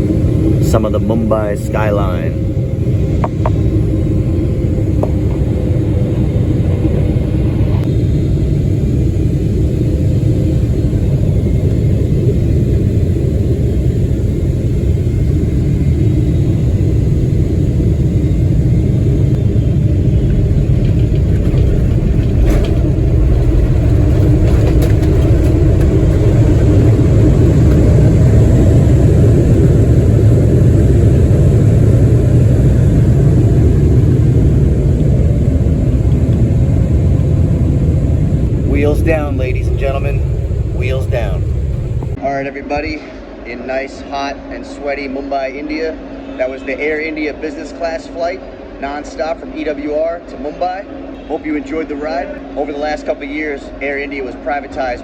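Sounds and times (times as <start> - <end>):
airliner cabin engine rumble: 0.0 - 55.0.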